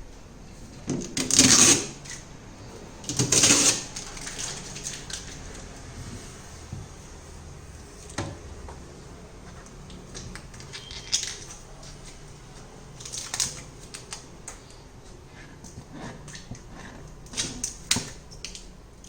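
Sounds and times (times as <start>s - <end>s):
hard objects clicking and knocking: 9.9s - 11.6s.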